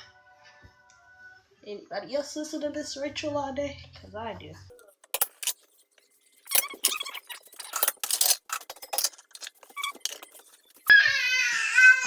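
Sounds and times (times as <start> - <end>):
dishes and utensils clinking: 4.8 - 10.9.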